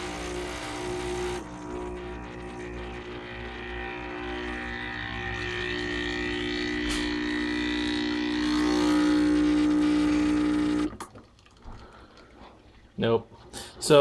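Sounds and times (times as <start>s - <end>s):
espresso machine pump humming: 0.0s - 11.0s.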